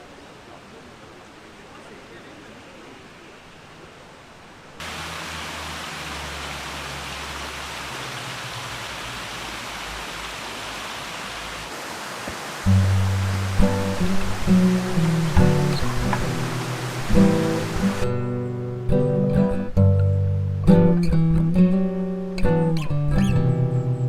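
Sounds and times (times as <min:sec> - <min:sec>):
steady rushing noise: 0:04.8 - 0:18.1
acoustic guitar: 0:12.6 - 0:24.0.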